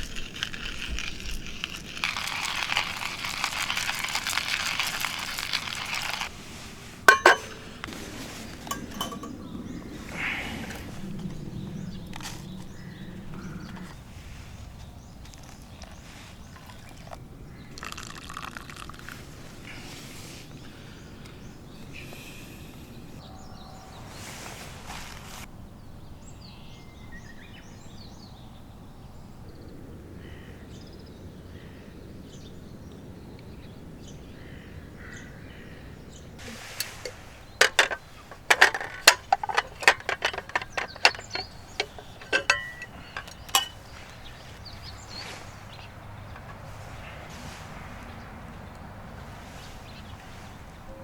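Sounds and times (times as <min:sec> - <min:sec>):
outdoor background noise: 0:00.0 - 0:51.0
sharp clicks and clinks: 0:07.1 - 0:07.7, 0:08.6 - 0:09.4, 0:37.6 - 0:43.8.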